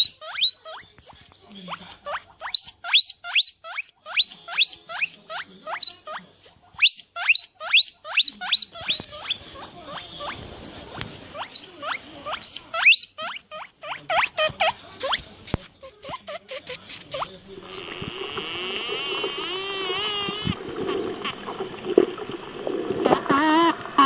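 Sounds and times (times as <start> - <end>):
animal squeaking: 0.0 - 1.0, 1.6 - 18.7
rustling hiss: 9.2 - 12.3.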